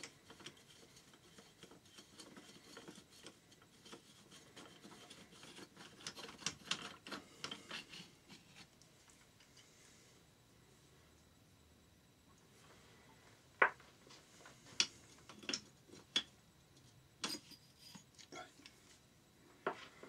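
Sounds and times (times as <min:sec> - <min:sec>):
hand tools clicking and scraping: 0:00.0 - 0:08.7, 0:14.7 - 0:18.5.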